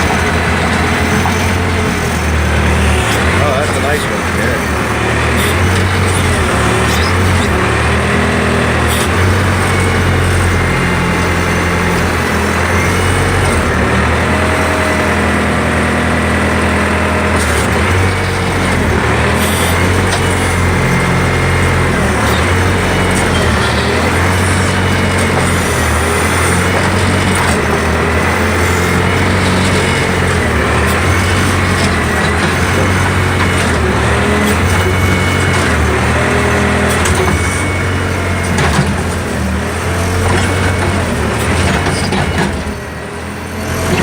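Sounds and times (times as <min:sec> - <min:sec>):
backhoe engine running: 0:00.0 - 0:44.0
hydraulic whine: 0:00.0 - 0:44.0.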